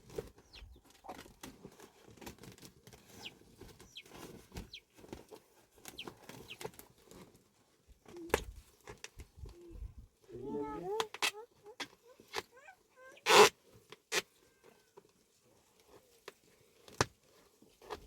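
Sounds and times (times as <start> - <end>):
handling rustles and knocks: 0.0 - 9.6, 15.0 - 18.0
birds chirping: 0.3 - 0.9, 3.1 - 4.9.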